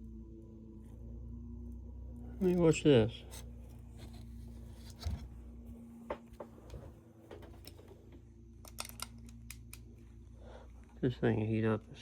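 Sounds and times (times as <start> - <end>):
low electrical hum: 0.0 - 12.0
tools clicking and tapping: 8.6 - 9.9.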